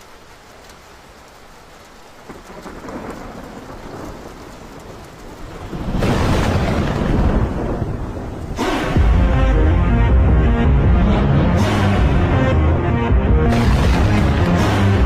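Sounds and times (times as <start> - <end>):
rain falling: 0.0 - 15.0
thunder rolling: 2.3 - 11.0, 13.3 - 15.0.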